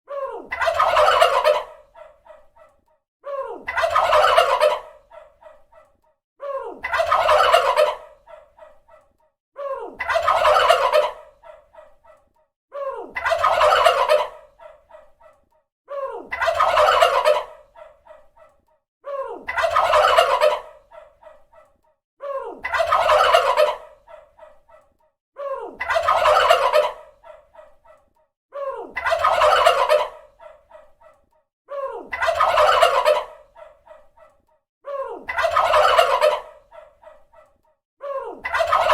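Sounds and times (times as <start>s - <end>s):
turkey gobbling: 0.6s - 2.4s, 3.7s - 5.6s, 6.9s - 8.8s, 10.0s - 11.9s, 13.2s - 15.0s, 16.4s - 17.9s, 19.5s - 21.4s, 22.7s - 24.2s, 25.8s - 27.4s, 29.0s - 30.6s, 32.1s - 34.0s, 35.3s - 36.9s, 38.4s - 38.9s.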